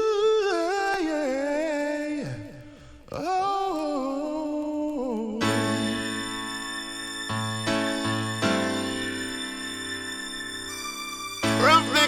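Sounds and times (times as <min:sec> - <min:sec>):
person singing wordless notes: 0:00.0 - 0:07.2, 0:11.4 - 0:12.0
sustained instrumental chord: 0:05.4 - 0:12.0.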